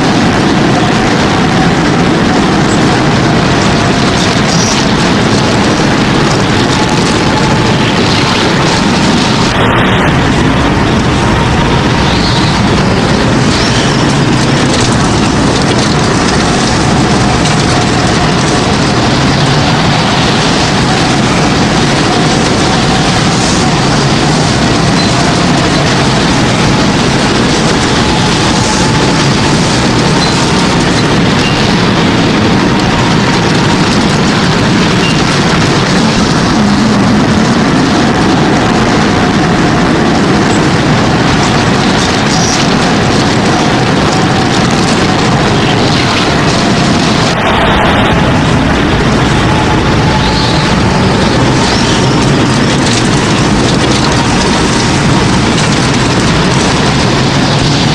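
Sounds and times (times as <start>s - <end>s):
deep rumble: 0.0s - 57.9s
tornado wind rushing: 0.0s - 57.9s.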